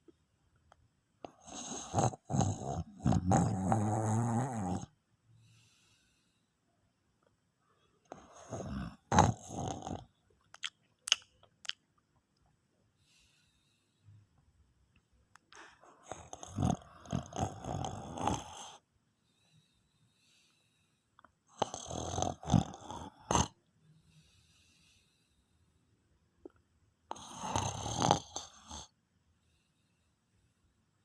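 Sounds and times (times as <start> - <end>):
person snoring: 1.3 - 4.9, 8.1 - 10.1, 16.0 - 18.8, 21.5 - 23.6, 27.1 - 28.9.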